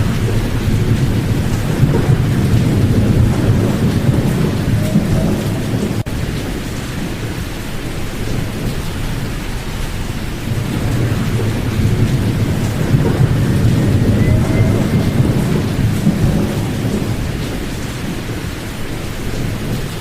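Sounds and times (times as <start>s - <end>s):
filtered pink noise rushing: 10.0s - 20.0s.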